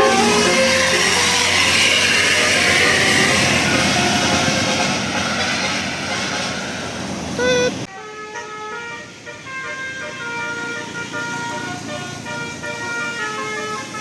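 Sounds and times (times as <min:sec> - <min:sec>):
multi-tone musical bus horn: 0:00.0 - 0:06.7, 0:07.4 - 0:14.0
tour bus and street noise: 0:00.0 - 0:14.0
short horn note: 0:07.4 - 0:07.9.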